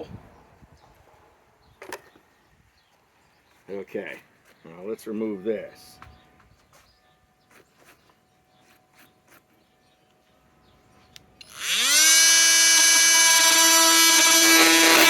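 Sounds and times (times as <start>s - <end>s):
multi-tool motor whine: 11.4s - 15.0s.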